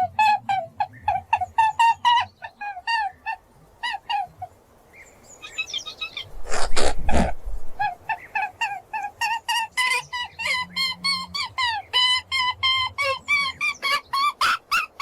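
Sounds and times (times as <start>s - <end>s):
rustling puffing noises: 6.3s - 7.9s.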